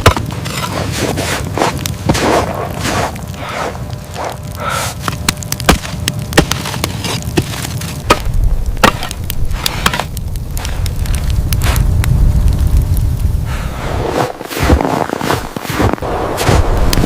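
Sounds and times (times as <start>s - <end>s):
wood cracking and snapping: 0.0s - 13.2s
low steady rumble: 0.0s - 15.1s.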